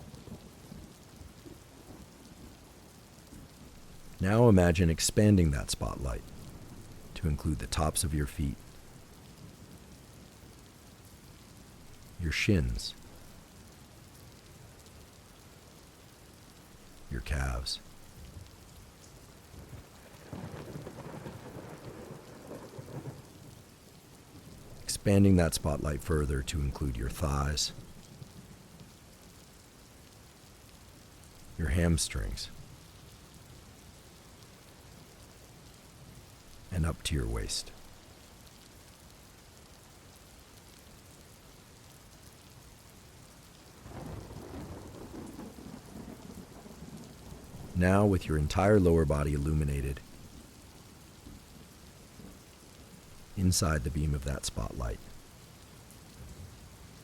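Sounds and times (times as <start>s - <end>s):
steady rain: 0.0s - 57.0s
thunder rumbling: 43.8s - 48.6s.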